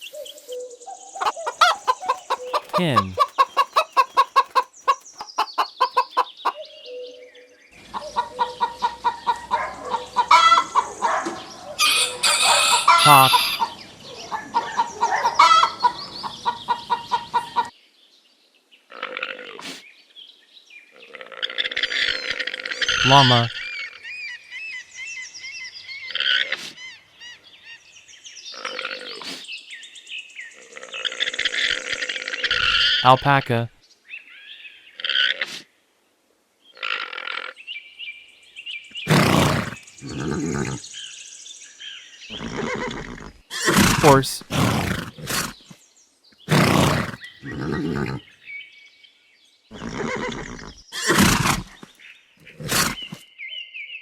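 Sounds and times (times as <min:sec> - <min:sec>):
faint chirping: 0:00.5 - 0:07.0
farm bird harsh calls: 0:01.0 - 0:07.1, 0:07.8 - 0:17.7, 0:21.8 - 0:24.3, 0:39.0 - 0:41.1, 0:42.3 - 0:45.8, 0:46.4 - 0:48.4, 0:49.7 - 0:53.2
alpaca calling: 0:01.2 - 0:06.5, 0:12.0 - 0:13.7, 0:23.0 - 0:23.6.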